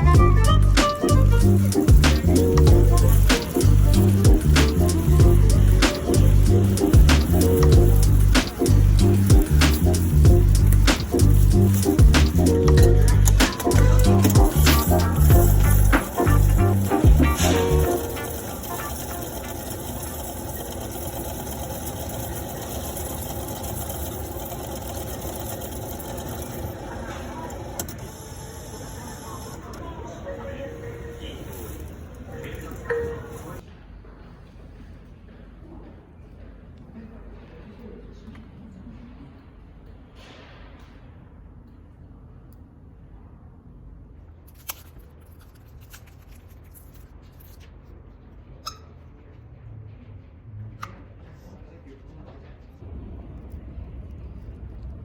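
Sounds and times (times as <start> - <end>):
vehicle engine rumble: 0.0 - 17.9.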